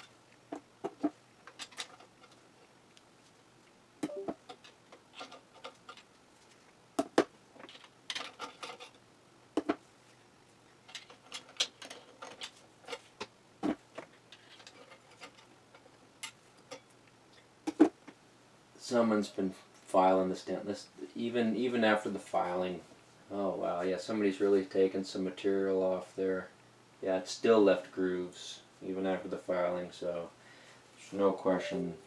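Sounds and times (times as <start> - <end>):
metal parts clinking: 4.4 - 6.1, 7.6 - 9.0, 10.9 - 13.1.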